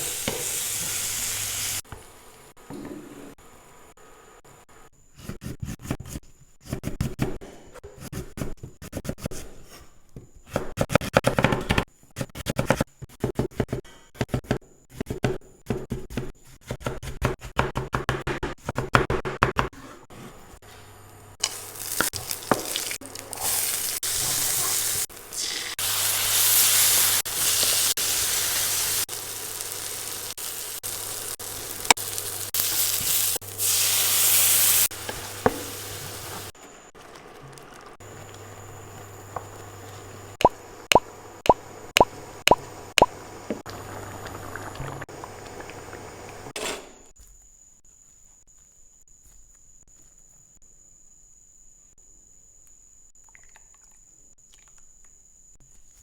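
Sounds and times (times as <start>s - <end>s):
food sizzling in hot oil: 0.0s - 1.8s, 21.4s - 36.5s.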